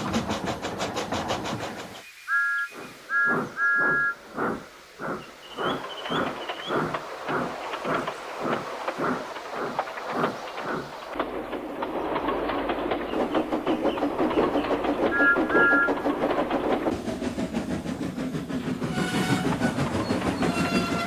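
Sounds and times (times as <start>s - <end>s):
steam locomotive chuffing: 0.0s - 2.0s, 2.7s - 21.0s
wheel clatter: 3.8s - 17.6s, 18.6s - 21.0s
train whistle: 18.9s - 21.0s.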